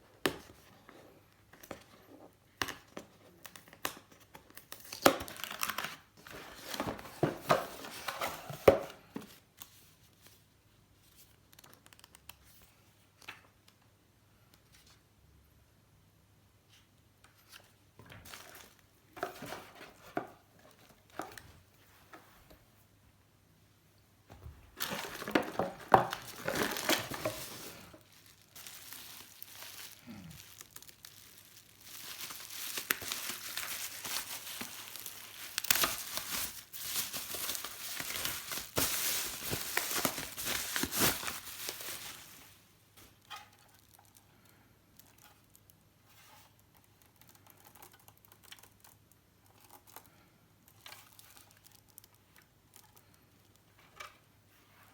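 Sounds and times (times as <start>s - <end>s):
packaging crinkling and rustling: 2.8s - 10.4s, 24.3s - 45.7s, 49.6s - 53.7s.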